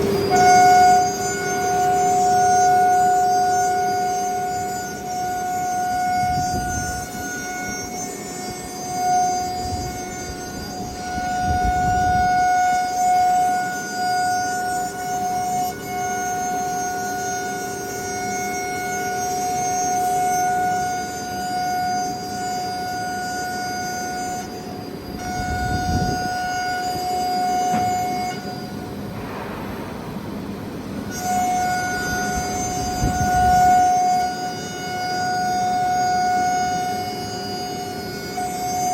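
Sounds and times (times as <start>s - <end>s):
router spindle whining: 0.0s - 29.0s.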